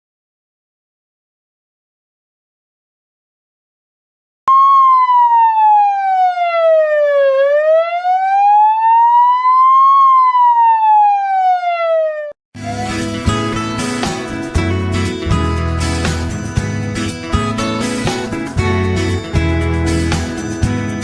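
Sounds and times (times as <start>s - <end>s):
siren-like wailing tone: 4.5s - 13.2s
guitar music: 12.6s - 21.0s.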